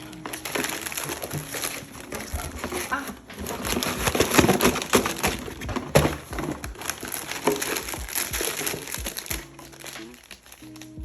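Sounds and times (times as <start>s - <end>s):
plastic packaging crinkling: 0.0s - 11.0s.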